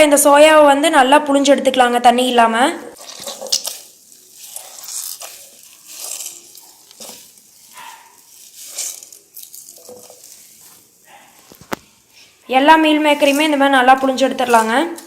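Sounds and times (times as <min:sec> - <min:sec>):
water squelching from squeezed chunks: 0:03.0 - 0:15.0.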